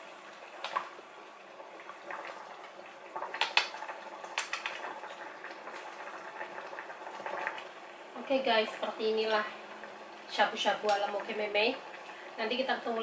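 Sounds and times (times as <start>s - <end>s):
broth bubbling: 0.0s - 13.0s.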